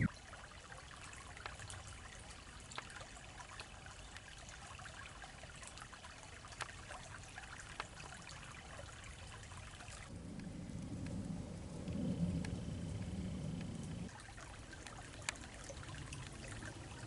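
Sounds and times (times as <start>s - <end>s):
stream trickling: 0.0s - 17.0s
low rumbling noise: 10.1s - 14.1s
fine crackling ticks: 10.3s - 14.1s.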